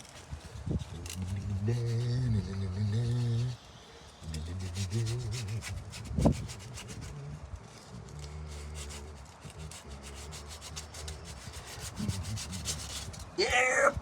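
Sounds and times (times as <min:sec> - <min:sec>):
sandpaper rubbing: 0:04.2 - 0:13.4.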